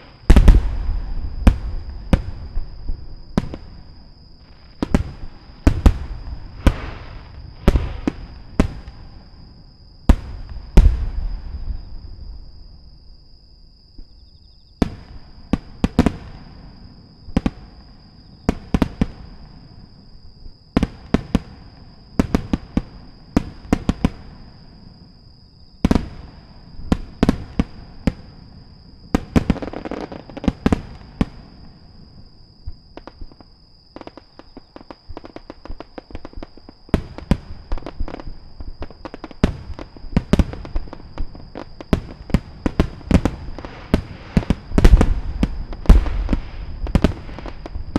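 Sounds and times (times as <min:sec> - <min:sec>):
firework crackling: 0:00.0 - 0:03.9, 0:41.6 - 0:47.9
firework shells bursting: 0:43.9 - 0:47.7.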